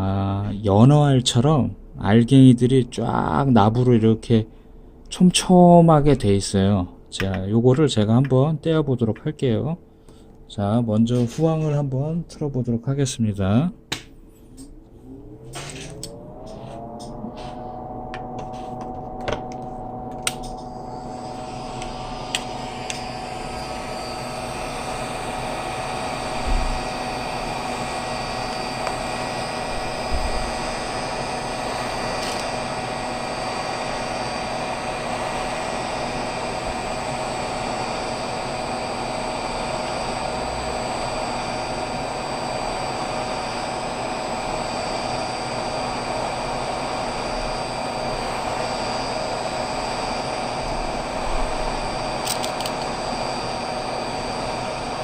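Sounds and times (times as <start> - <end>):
hot air gun blower whirring: 14.6 - 55.0.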